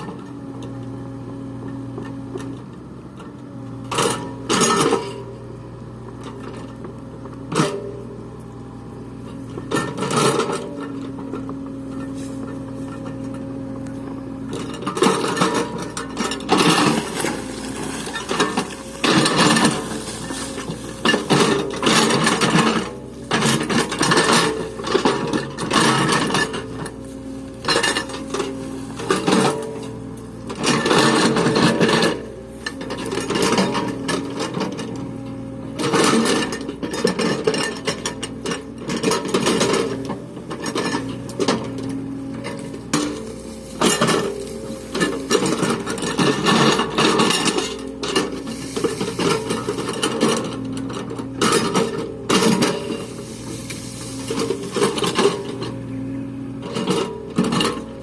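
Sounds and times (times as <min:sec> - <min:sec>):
backhoe diesel engine running: 0:00.0 - 0:58.0
rough scraping of ground: 0:01.6 - 0:58.0.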